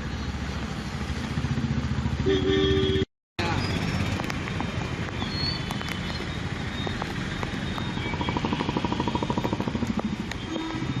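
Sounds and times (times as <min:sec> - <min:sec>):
street traffic: 0:00.0 - 0:11.0
engine puttering: 0:06.8 - 0:11.0.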